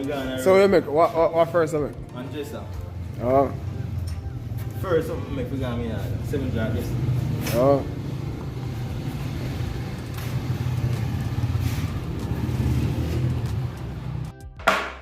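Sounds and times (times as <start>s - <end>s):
sharp knock: 14.6s - 15.0s.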